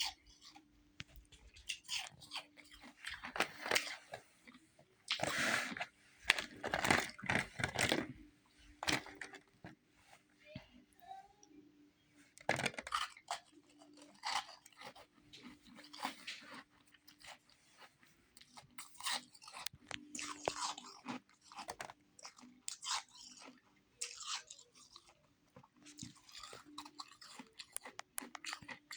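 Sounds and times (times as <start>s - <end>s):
person chewing crunchy ice: 1.4s - 7.9s, 12.5s - 17.5s, 18.4s - 28.9s.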